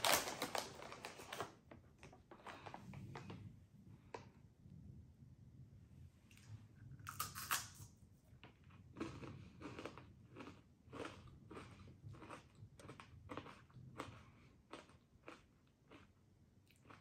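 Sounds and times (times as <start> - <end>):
person crunching corn puffs: 0.0 - 1.4, 7.0 - 17.0.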